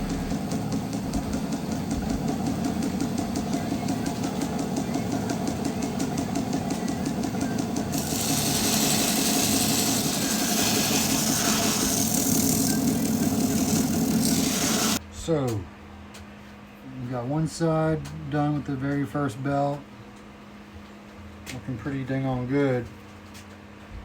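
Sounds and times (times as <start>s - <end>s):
belt grinder ticking: 0.0s - 15.0s
blade grinding hiss: 7.9s - 15.0s.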